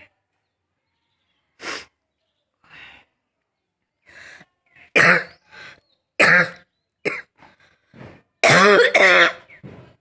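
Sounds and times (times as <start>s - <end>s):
person coughing: 8.4s - 9.4s.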